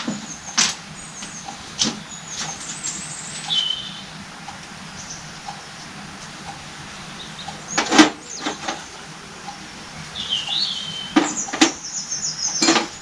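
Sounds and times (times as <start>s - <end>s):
faint ticking: 3.4s - 12.6s.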